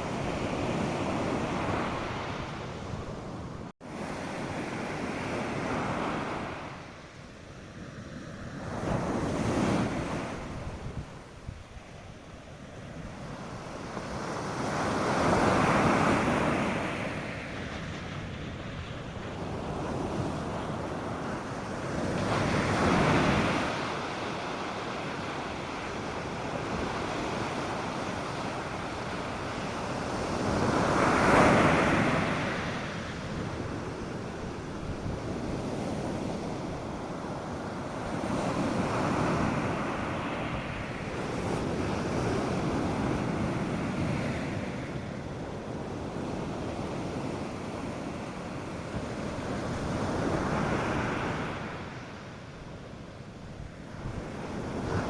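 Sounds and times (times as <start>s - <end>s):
light wind: 0.0s - 55.0s
surf breaking on beach: 12.9s - 52.2s.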